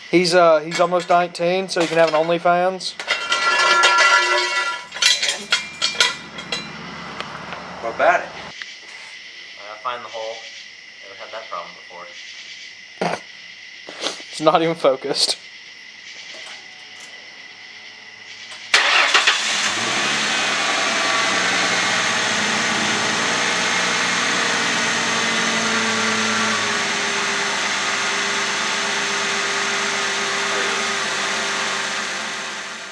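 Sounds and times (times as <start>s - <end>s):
car engine cranking and idling: 0.7s - 8.5s, 18.7s - 32.9s.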